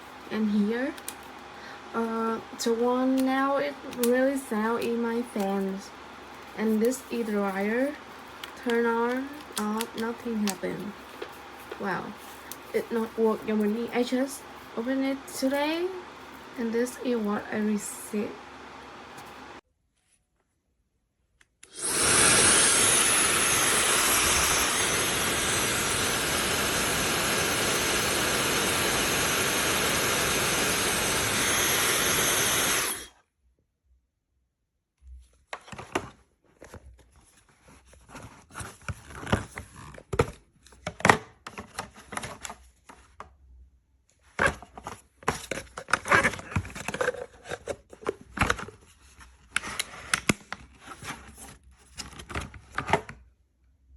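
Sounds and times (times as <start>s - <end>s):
hair dryer running with high whine: 21.6s - 33.1s.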